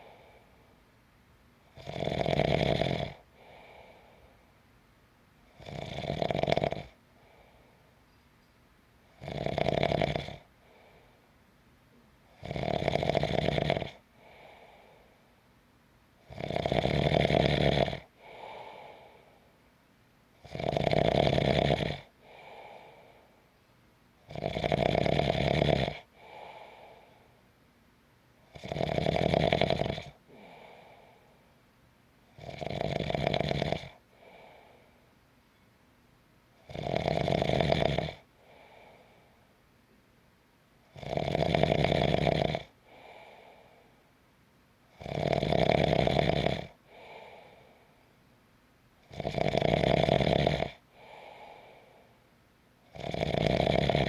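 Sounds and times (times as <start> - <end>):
soft breath: 0.0 - 0.9, 3.2 - 4.6, 7.0 - 8.6, 10.4 - 12.0, 14.0 - 15.5, 18.1 - 19.7, 22.1 - 23.8, 26.0 - 27.6, 30.2 - 31.7, 33.9 - 35.2, 38.3 - 39.6, 42.8 - 44.2, 46.8 - 48.3, 50.8 - 52.4
person snoring: 1.8 - 3.8, 5.6 - 7.0, 9.2 - 10.5, 12.4 - 14.8, 16.3 - 19.1, 20.4 - 23.0, 24.3 - 27.1, 28.5 - 31.2, 32.4 - 34.8, 36.7 - 39.1, 41.0 - 43.7, 45.0 - 47.6, 49.1 - 51.9, 52.9 - 54.0.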